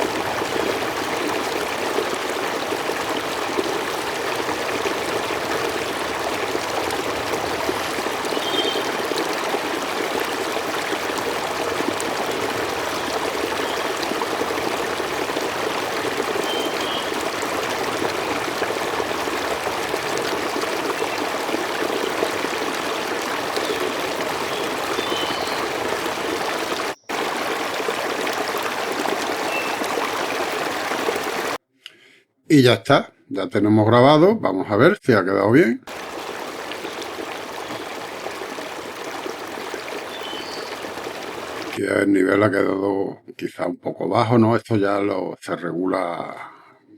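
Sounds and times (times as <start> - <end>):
stream water flowing: 0.0 - 31.6, 35.9 - 41.8.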